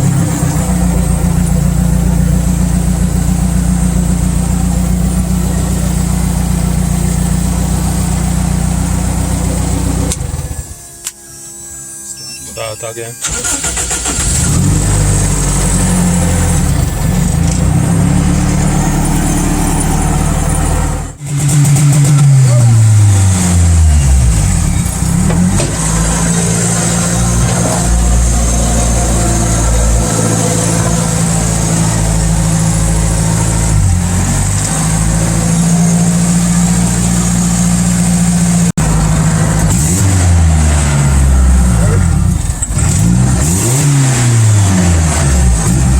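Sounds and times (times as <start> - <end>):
four-cylinder engine idling: 0.0 - 11.1, 13.2 - 23.1, 23.7 - 39.7.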